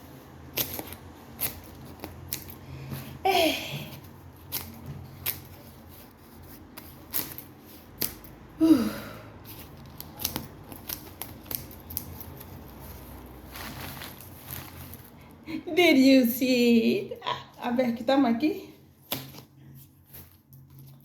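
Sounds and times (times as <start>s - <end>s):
wrapping crinkling and rustling: 0.0s - 3.2s, 3.8s - 8.8s, 9.4s - 15.7s, 18.9s - 21.0s.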